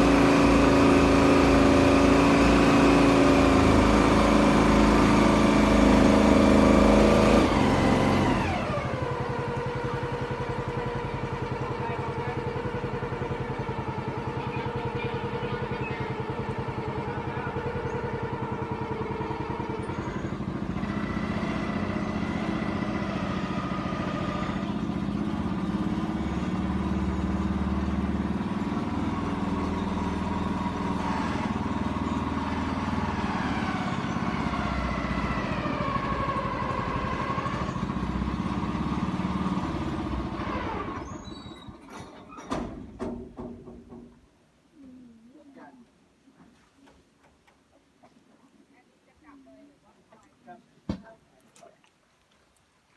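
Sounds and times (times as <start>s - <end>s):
boat engine running: 0.0s - 42.0s.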